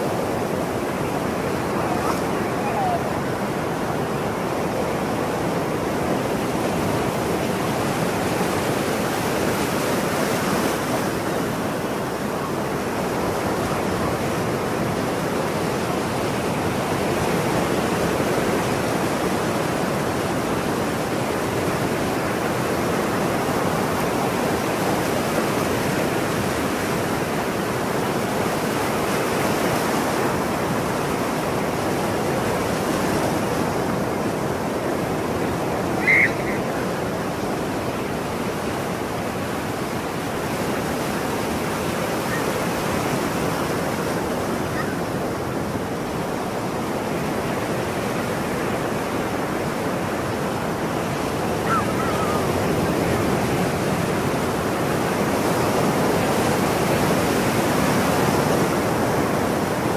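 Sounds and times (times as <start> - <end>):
waves breaking: 0.0 - 59.9
seagull call: 35.8 - 37.1, 44.6 - 45.1, 51.5 - 53.3.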